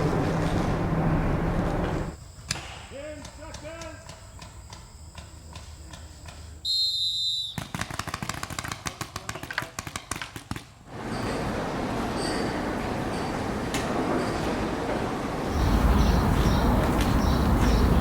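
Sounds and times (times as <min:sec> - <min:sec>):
rapid sharp pops: 0:07.6 - 0:10.7
steady noisy rush: 0:15.5 - 0:18.0.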